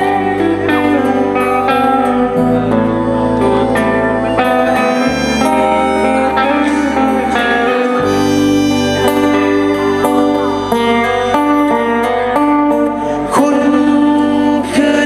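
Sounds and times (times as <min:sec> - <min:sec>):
bass line: 0:00.0 - 0:14.6
electric guitar playing: 0:00.0 - 0:15.0.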